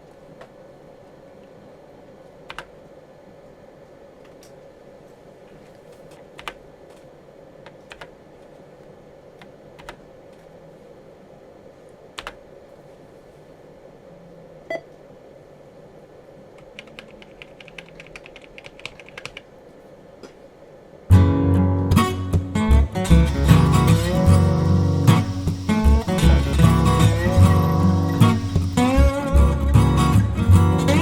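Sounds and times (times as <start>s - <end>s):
keyboard typing: 16.8s - 19.4s
acoustic guitar music: 22.9s - 31.0s
faint steady hum: 23.1s - 31.0s.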